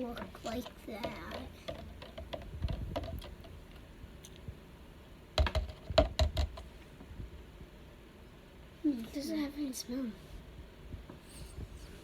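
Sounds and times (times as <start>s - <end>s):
light clicks and knocks: 0.0s - 4.4s.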